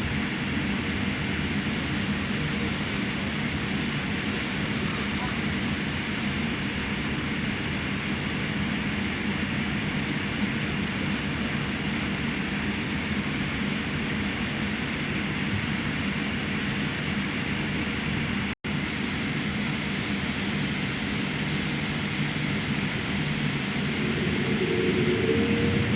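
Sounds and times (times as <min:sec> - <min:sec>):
airliner cabin engine rush: 0:00.0 - 0:25.9
low hum: 0:20.9 - 0:25.9.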